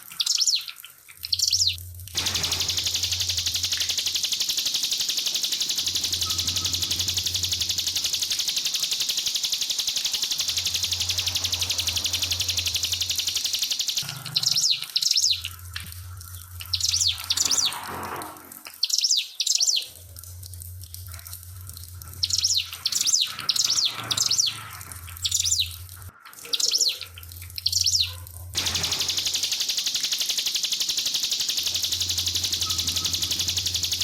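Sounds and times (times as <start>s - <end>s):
bird high chirps: 0.0s - 15.6s, 16.6s - 17.8s, 18.8s - 20.0s, 22.2s - 24.6s, 26.4s - 34.0s
high buzzing rattle: 1.6s - 18.4s, 28.5s - 34.0s.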